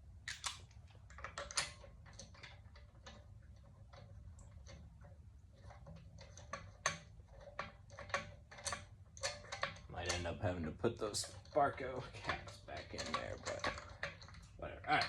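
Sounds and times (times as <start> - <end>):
metal bolt clicking while threaded: 5.7 - 10.2.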